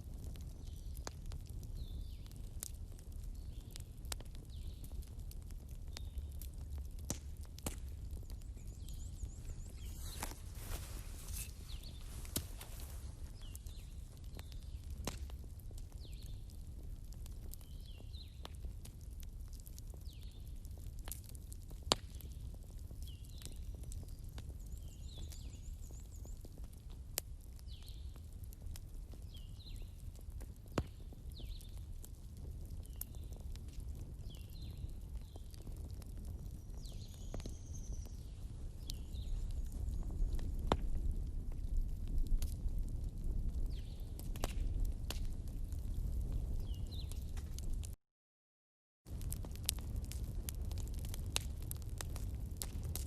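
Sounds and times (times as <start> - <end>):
flame rumble: 0.0 - 24.7, 30.2 - 48.0, 49.1 - 53.0
bonfire crackling and popping: 0.0 - 48.0, 49.0 - 53.0
high whistling from fire: 8.5 - 14.0.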